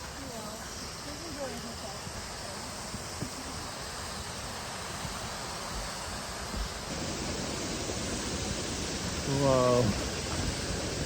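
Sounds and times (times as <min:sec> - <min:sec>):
waterfall rushing: 0:03.7 - 0:11.0.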